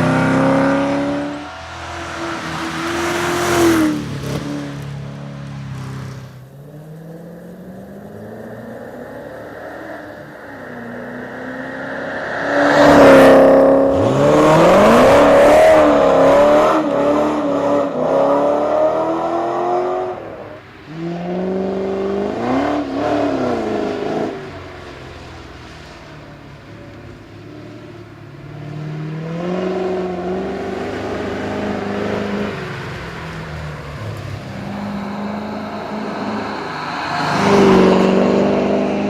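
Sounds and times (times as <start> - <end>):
car engine revving hard: 0.0 - 4.9, 6.7 - 20.3.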